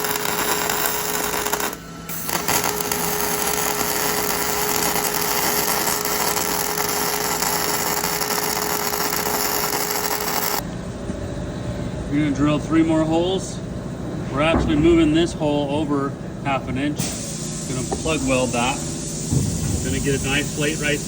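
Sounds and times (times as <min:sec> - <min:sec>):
electric drill whining: 0:00.0 - 0:10.6.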